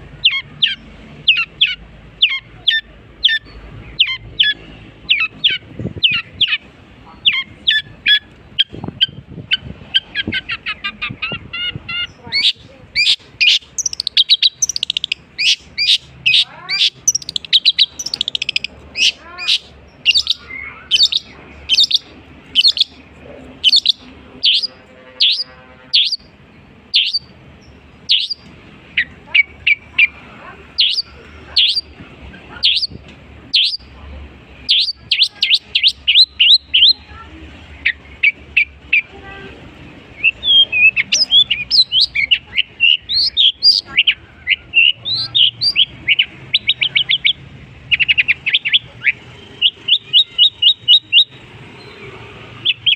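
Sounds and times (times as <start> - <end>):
bird singing chirps and whistles: 12.4 - 23.0, 23.6 - 26.3, 27.0 - 27.3, 28.1 - 28.4, 30.8 - 31.8, 33.6 - 33.8, 34.7 - 37.0, 40.2 - 52.0, 52.6 - 52.9.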